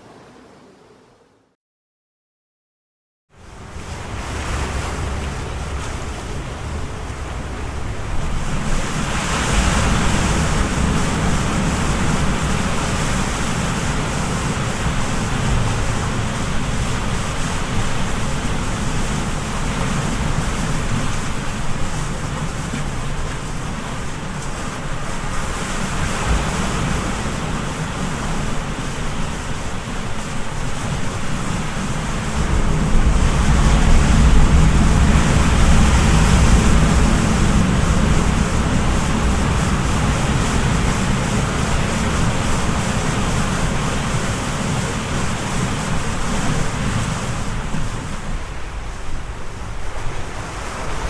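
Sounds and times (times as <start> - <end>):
sea waves surf: 0.0 - 1.6, 3.4 - 51.0
deep rumble: 31.7 - 45.1.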